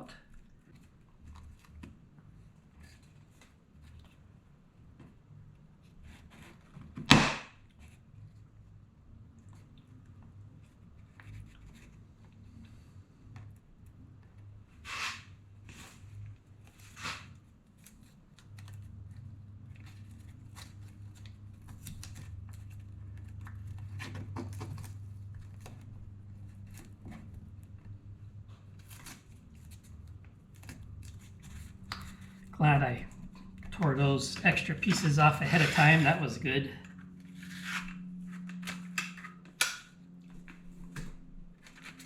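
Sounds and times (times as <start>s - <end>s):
low steady hum: 0.0s - 42.0s
tape peeling and crinkling: 14.8s - 36.3s, 36.9s - 42.0s.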